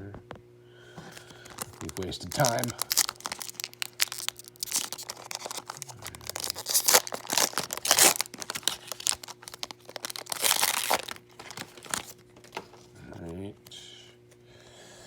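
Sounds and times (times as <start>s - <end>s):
card pack wrapper crinkling: 1.0s - 12.9s
cards being shuffled: 1.0s - 13.4s.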